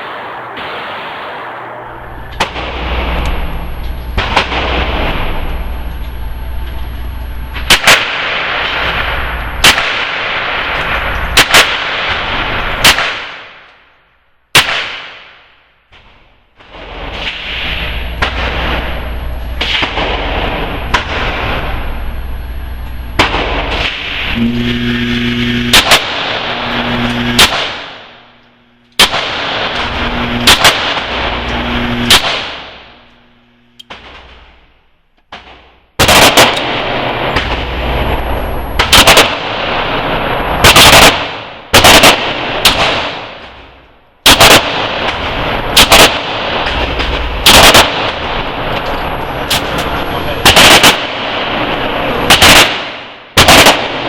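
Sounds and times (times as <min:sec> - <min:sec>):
steady rushing noise: 0:00.0 - 0:13.1, 0:15.9 - 0:34.7, 0:35.9 - 0:43.8, 0:44.6 - 0:54.0.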